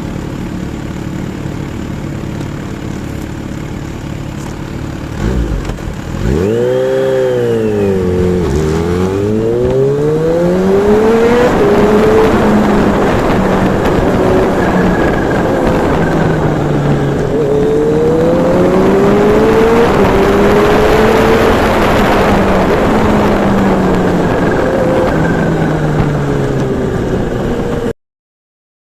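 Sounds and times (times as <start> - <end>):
motorcycle engine revving: 0.0 - 27.9
wind noise on microphone: 6.4 - 27.9.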